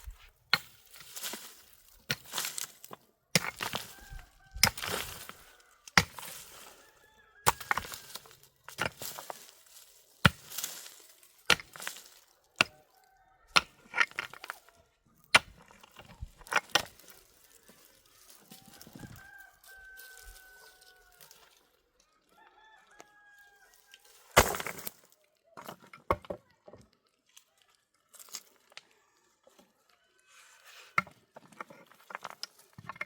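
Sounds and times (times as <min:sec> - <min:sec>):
hand tool striking ground: 0:00.0 - 0:12.9, 0:13.5 - 0:14.7, 0:15.3 - 0:20.6, 0:24.3 - 0:25.1
rooster crowing: 0:03.7 - 0:08.4, 0:18.3 - 0:21.5, 0:22.3 - 0:24.2.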